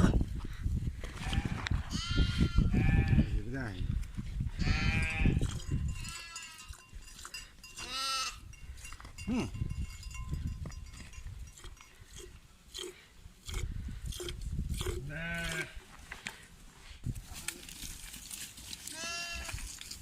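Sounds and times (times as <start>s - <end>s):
sheep bleating: 4.6s - 5.4s, 7.8s - 8.4s, 15.1s - 15.8s, 18.9s - 19.6s.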